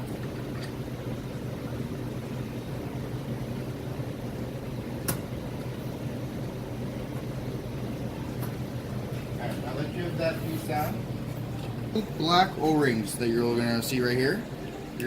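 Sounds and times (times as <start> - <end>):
low machinery hum: 0.0 - 15.0.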